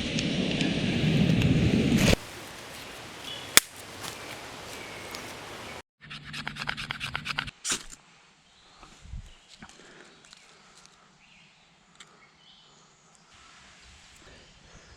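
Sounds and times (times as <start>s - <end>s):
sharp click: 2.2s - 5.4s
hand scraping and rubbing: 2.2s - 5.8s.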